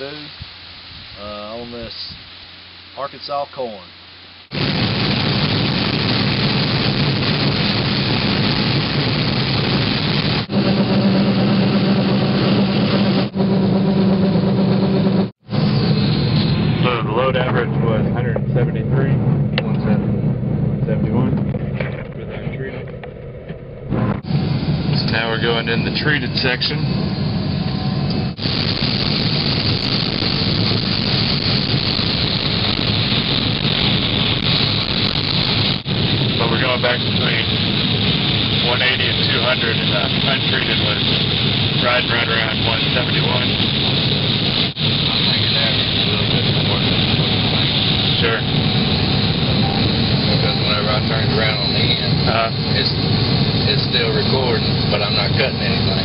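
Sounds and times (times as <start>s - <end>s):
steady low hum: 0.0s - 56.0s
combine harvester machinery: 10.0s - 41.6s.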